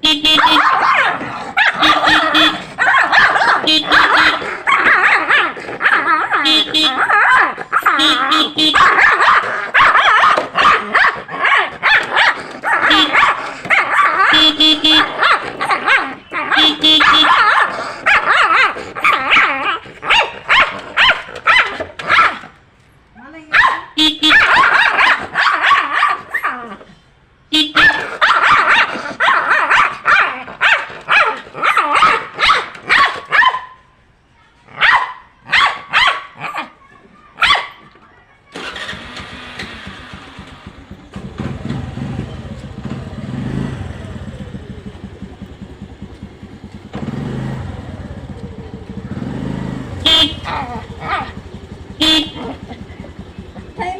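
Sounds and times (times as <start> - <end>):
vehicle engine running: 0.0 - 22.0, 38.6 - 53.9
dog barking angrily: 0.2 - 22.6, 23.5 - 26.9, 27.6 - 33.8, 34.7 - 37.9, 49.1 - 53.2.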